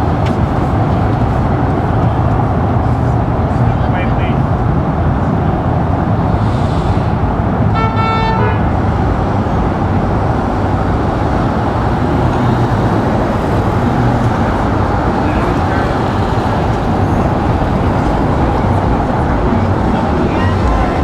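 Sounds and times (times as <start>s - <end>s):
road traffic noise: 0.0s - 21.0s
car horn toot: 7.7s - 8.7s.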